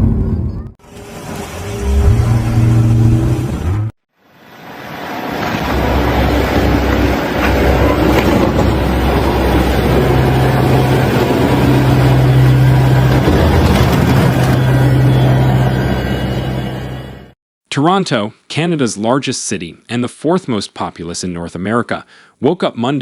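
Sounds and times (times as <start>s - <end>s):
low hum: 0.0s - 17.4s
engine running: 0.8s - 17.4s
loud rushing noise: 1.0s - 17.3s.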